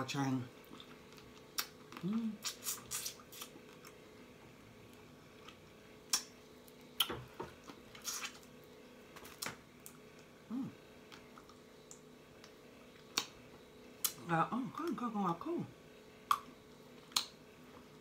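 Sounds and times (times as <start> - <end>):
wet chewing smacks and clicks: 0.7 - 4.0, 5.4 - 6.3, 16.3 - 17.4.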